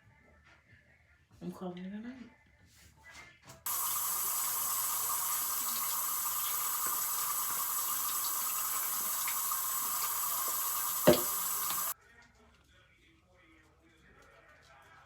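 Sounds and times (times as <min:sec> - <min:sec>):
water running from sink tap: 0:03.7 - 0:12.0
knock: 0:11.0 - 0:11.4.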